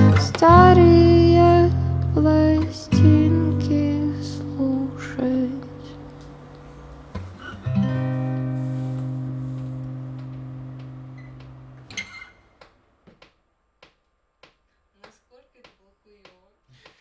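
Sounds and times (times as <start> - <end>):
guitar strings damped: 0.0 - 12.0
acoustic guitar chord ringing: 0.0 - 12.1.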